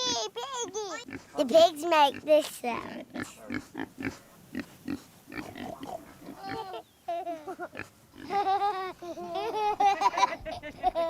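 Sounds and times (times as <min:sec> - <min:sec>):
pigs grunting and oinking: 0:02.1 - 0:06.8.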